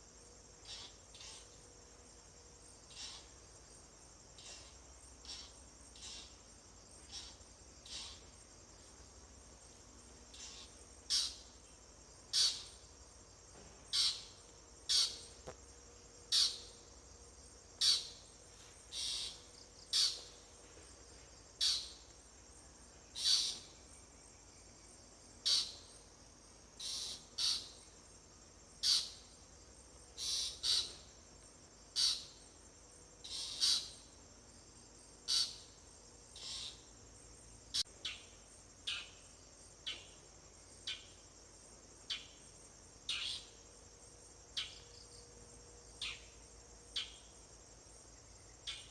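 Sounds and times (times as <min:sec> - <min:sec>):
insects droning: 0:00.0 - 0:48.9
bird high downward calls: 0:18.9 - 0:20.3.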